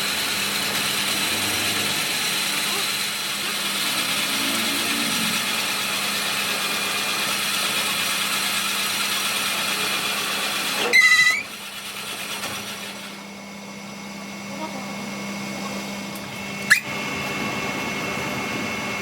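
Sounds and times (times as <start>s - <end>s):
workshop machine running: 0.0s - 19.0s
high-pitched squeal: 10.8s - 11.5s.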